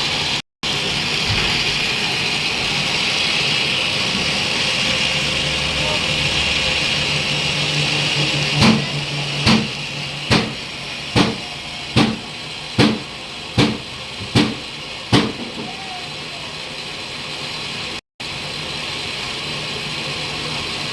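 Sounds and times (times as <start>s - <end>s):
lathe humming: 0.7s - 14.4s
heavy ringing knocks: 5.1s - 15.7s.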